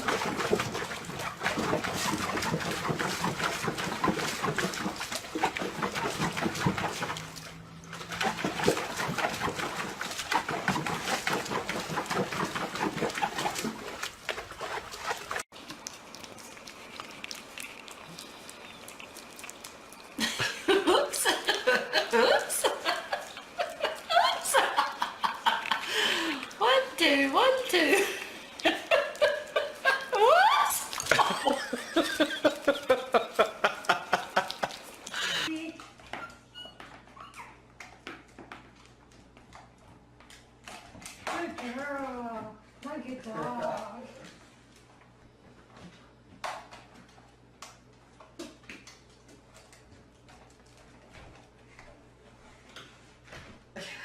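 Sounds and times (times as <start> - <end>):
dog yipping: 36.1 - 37.6
dog whining: 36.1 - 37.7.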